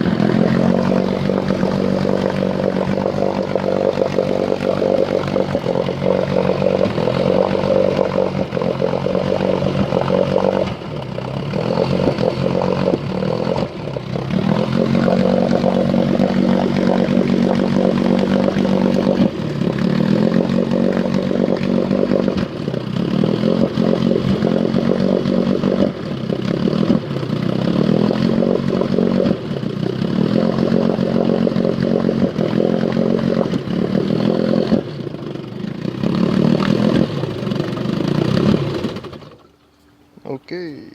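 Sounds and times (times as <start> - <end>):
engine idling roughly: 0.0 - 39.6.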